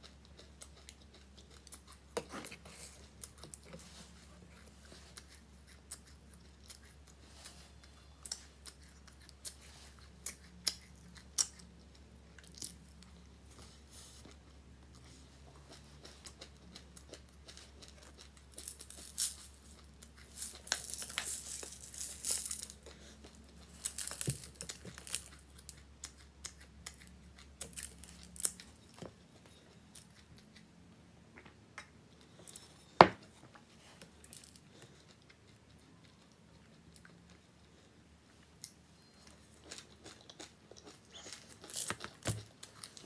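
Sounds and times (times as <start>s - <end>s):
packaging crinkling and tearing: 18.5s - 22.9s, 23.5s - 25.8s, 41.2s - 43.0s.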